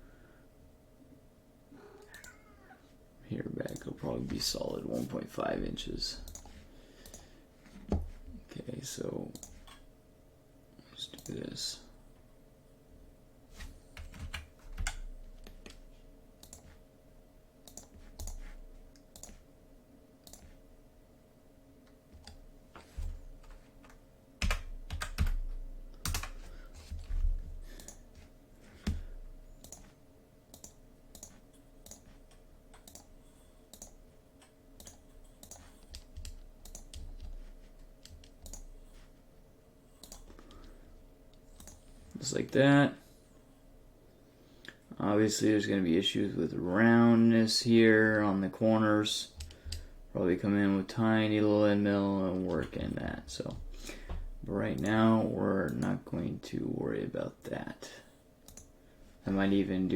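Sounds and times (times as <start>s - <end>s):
faint steady hum: 0.0s - 59.9s
keyboard typing: 17.6s - 19.4s, 23.4s - 25.4s, 26.0s - 26.4s, 30.5s - 33.1s, 33.7s - 38.8s.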